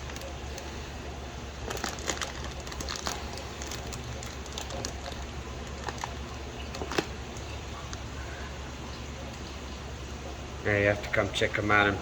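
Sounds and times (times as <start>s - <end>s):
plastic bag crinkling: 0.0s - 0.7s, 1.6s - 8.1s
steady low hum: 0.0s - 12.0s.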